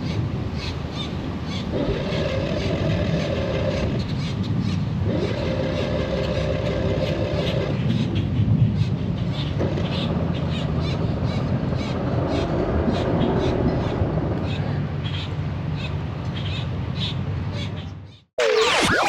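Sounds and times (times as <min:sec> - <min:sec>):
vehicle engine rumble: 0:03.5 - 0:18.1.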